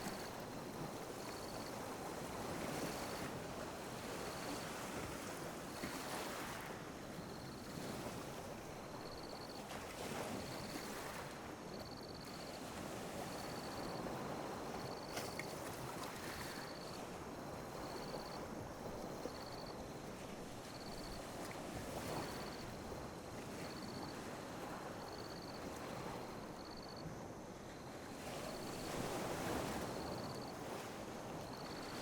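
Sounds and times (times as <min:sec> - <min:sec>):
ocean waves lapping: 0:27.8 - 0:32.0.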